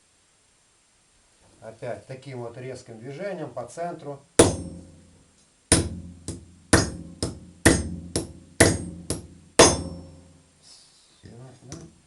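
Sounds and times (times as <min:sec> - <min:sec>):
hammer striking metal: 0:04.4 - 0:05.1, 0:05.7 - 0:10.3.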